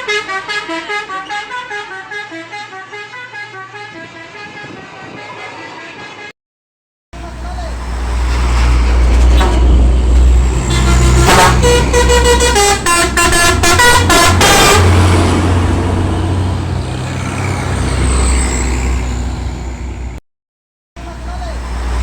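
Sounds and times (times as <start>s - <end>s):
truck musical horn tones: 0.0s - 5.3s, 9.3s - 19.6s
truck engine rumble: 7.2s - 20.2s, 21.0s - 22.0s.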